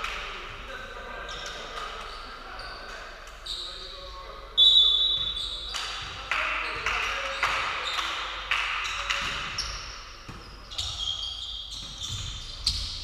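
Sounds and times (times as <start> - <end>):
shoe squeaks on floor: 1.3 - 4.0, 4.6 - 8.1, 8.8 - 13.0
volleyball bouncing on court: 5.1 - 11.0, 11.7 - 13.0.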